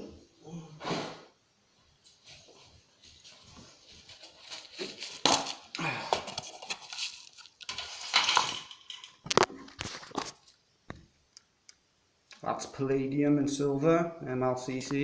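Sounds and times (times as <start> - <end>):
rustling and clattering of objects: 2.0 - 11.1.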